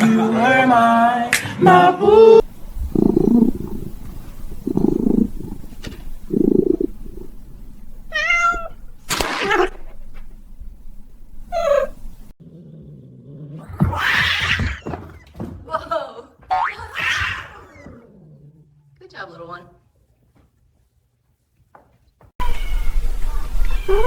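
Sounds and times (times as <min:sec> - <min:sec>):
cat meowing: 0:02.4 - 0:12.3, 0:13.6 - 0:15.3
dull low sounds: 0:02.4 - 0:12.4.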